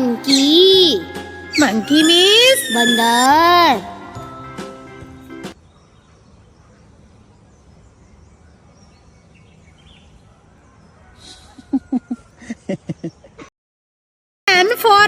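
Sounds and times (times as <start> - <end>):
bird chirps: 0.2 - 3.8, 5.6 - 12.1
short pitched monkey calls: 1.5 - 3.5.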